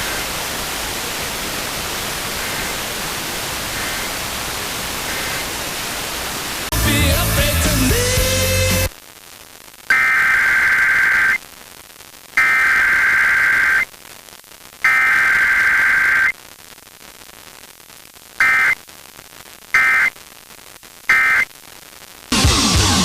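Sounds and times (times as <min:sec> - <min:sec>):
low hiss: 0:00.0 - 0:22.4
electronic data bursts screeching: 0:09.9 - 0:11.4, 0:12.4 - 0:13.9, 0:14.8 - 0:16.4, 0:18.4 - 0:18.8, 0:19.7 - 0:20.2, 0:21.1 - 0:21.5.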